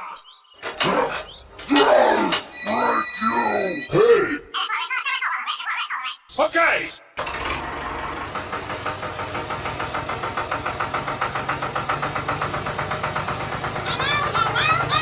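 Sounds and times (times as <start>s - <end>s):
small engine chugging: 7.2s - 15.0s.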